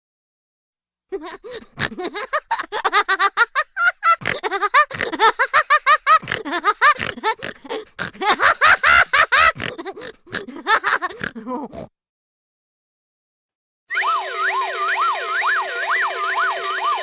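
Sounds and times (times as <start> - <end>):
cartoon high-pitched laugh: 1.2 - 11.8, 14.0 - 17.0.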